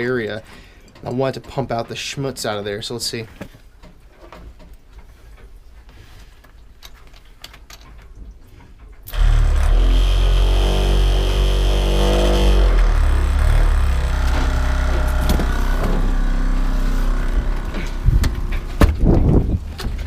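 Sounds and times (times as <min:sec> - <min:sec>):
sump pump humming and hissing: 0:09.1 - 0:20.0.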